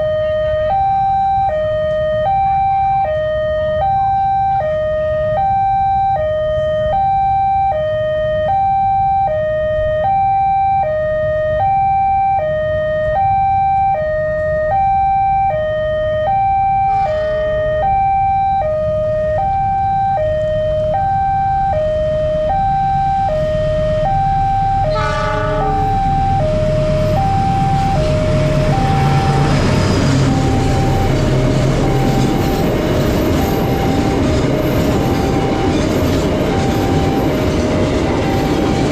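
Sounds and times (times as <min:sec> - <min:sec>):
two-tone level crossing siren: 0:00.0 - 0:38.9
train rumbling: 0:16.8 - 0:38.9.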